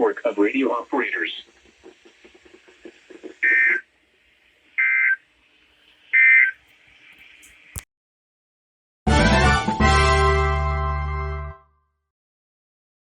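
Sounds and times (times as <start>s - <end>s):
faint radio hiss: 0.0s - 7.8s.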